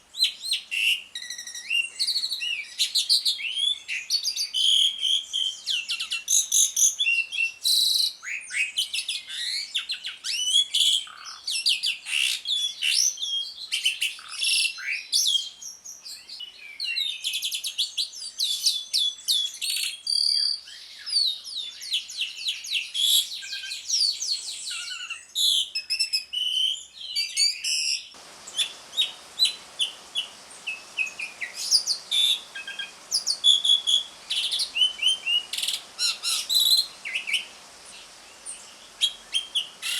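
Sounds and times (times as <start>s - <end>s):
background hiss: 28.1s - 39.9s
bird chirping and whistling: 28.2s - 39.9s.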